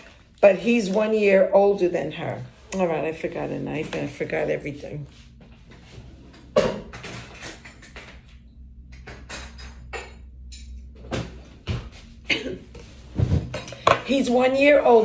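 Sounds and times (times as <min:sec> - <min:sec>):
low steady hum: 0:00.0 - 0:15.0
household things knocking and clinking: 0:06.5 - 0:12.0.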